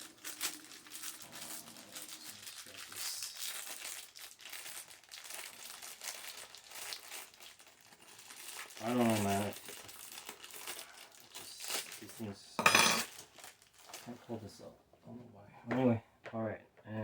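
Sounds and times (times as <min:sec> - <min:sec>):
packaging crinkling: 0:00.0 - 0:12.4, 0:13.0 - 0:14.2.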